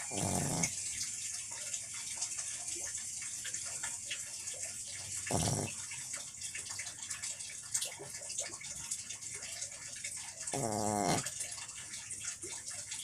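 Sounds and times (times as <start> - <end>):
person snoring: 0.0 - 0.7, 5.3 - 5.7, 10.6 - 11.2.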